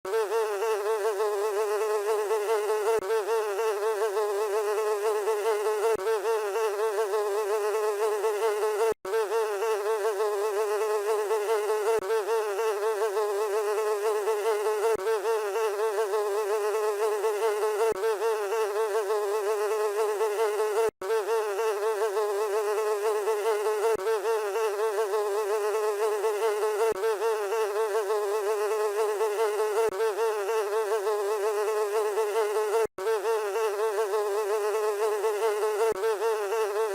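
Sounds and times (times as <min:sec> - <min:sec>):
housefly buzzing: 0:00.0 - 0:36.9.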